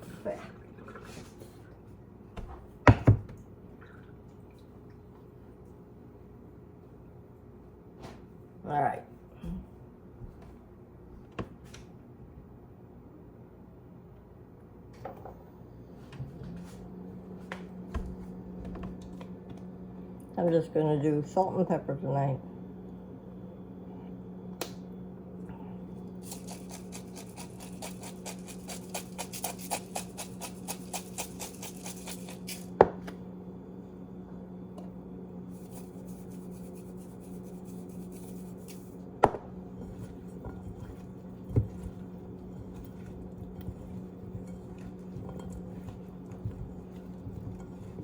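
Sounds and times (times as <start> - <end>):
steady low hum: 0.0 - 48.0
pepper mill grinding clicks: 26.2 - 32.7.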